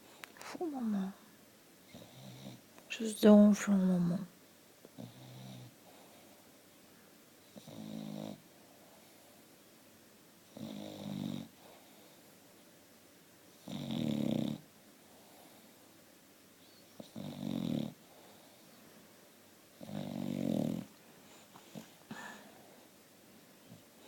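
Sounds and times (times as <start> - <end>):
dog snoring: 1.9 - 2.6, 4.9 - 6.3, 7.4 - 8.4, 10.5 - 12.2, 13.5 - 15.7, 16.8 - 18.7, 19.8 - 21.0.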